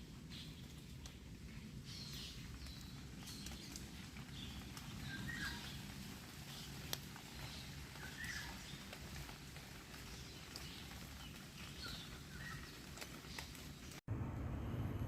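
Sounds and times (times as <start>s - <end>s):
footsteps on trail: 0.0s - 14.0s
bird chirps: 1.9s - 5.9s
steady low rumble: 13.8s - 15.0s.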